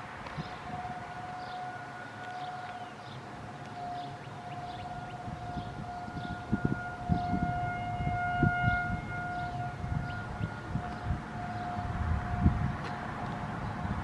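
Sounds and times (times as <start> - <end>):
warning siren steady tone: 0.0 - 14.0
higher siren tones: 0.4 - 13.2.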